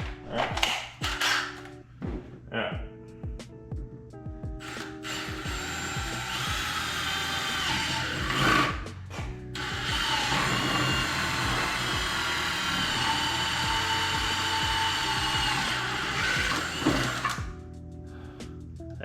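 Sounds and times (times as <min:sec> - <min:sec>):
power drill running under load: 0:04.6 - 0:08.8, 0:09.6 - 0:17.5.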